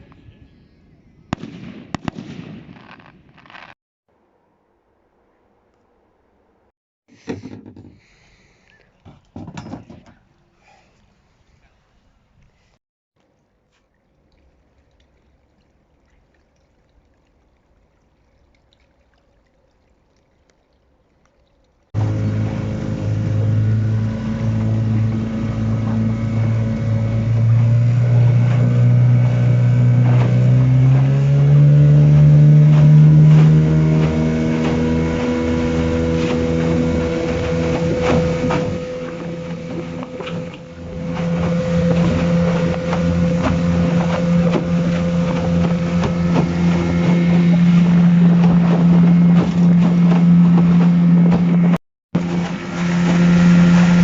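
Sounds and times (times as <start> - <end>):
boat motor running: 22.0 - 54.0.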